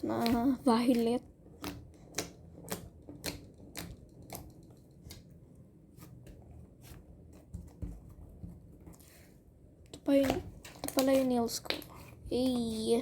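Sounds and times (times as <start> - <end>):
slime clicking and popping: 1.5 - 4.6.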